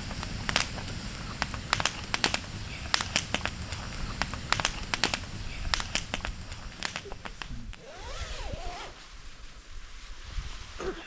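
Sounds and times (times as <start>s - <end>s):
campfire crackling and popping: 0.0s - 7.9s.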